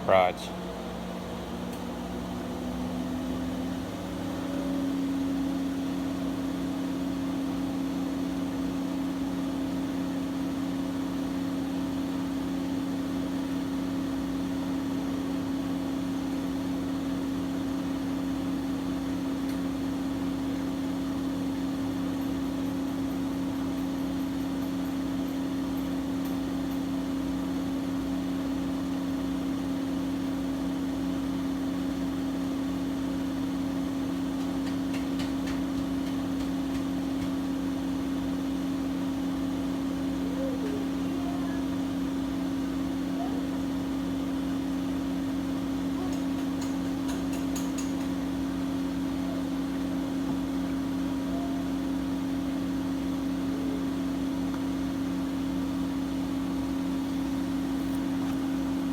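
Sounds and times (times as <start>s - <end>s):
washing machine motor hum: 0.0s - 58.9s.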